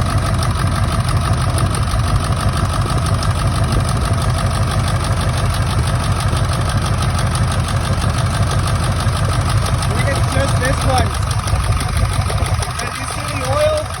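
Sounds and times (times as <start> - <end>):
diesel engine idling rough: 0.0 - 14.0.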